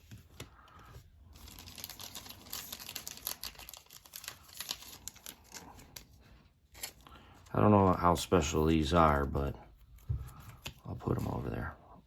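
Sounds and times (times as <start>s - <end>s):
trading cards rustling and clicking: 0.0s - 7.5s.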